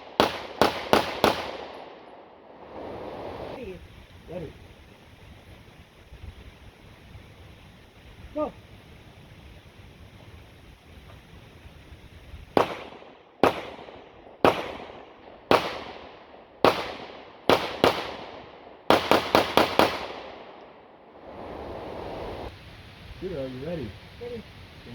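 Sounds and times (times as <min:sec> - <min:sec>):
pistol shots: 0:00.0 - 0:02.2, 0:12.6 - 0:20.8.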